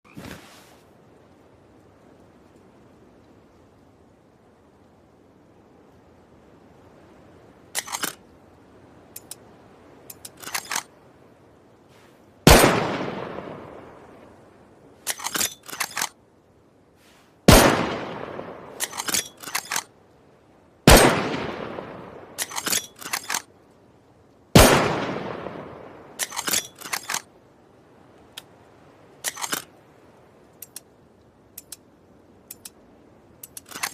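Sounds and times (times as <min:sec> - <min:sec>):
rifle bolt metallic clicks: 0:07.7 - 0:08.2, 0:09.1 - 0:09.4, 0:10.0 - 0:10.9, 0:15.0 - 0:16.2, 0:18.8 - 0:19.9, 0:22.4 - 0:23.5, 0:26.2 - 0:27.3, 0:29.2 - 0:29.7, 0:30.6 - 0:30.9, 0:31.6 - 0:31.9, 0:32.5 - 0:32.8, 0:33.4 - 0:33.9
rifle shots with echo: 0:12.5 - 0:13.9, 0:17.5 - 0:19.1, 0:20.9 - 0:22.6, 0:24.6 - 0:26.4.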